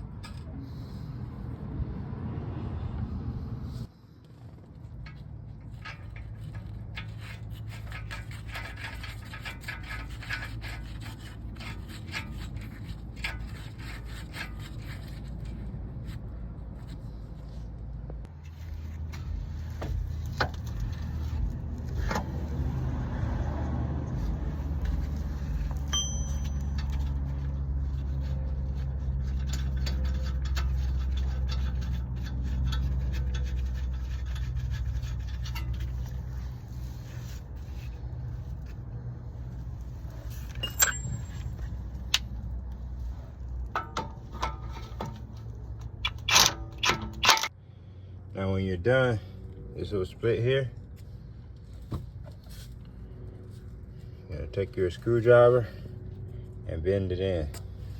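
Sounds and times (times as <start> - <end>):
steady low rumble: 0.0 - 46.3
metal tools clinking and scraping: 4.9 - 15.6, 24.5 - 38.8, 39.6 - 47.5.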